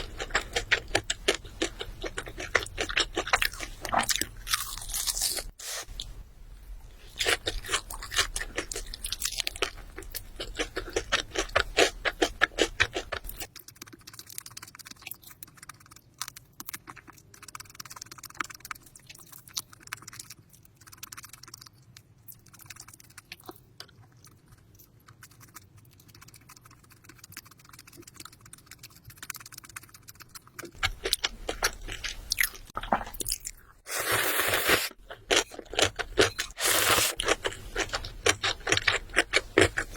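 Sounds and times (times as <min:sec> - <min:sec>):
chewing crunchy fried chicken: 0:00.0 - 0:06.1, 0:07.0 - 0:39.9.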